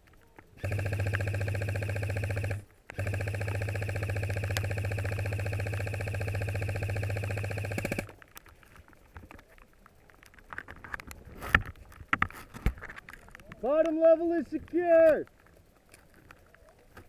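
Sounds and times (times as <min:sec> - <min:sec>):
airsoft gun full-auto burst: 0:00.6 - 0:08.1.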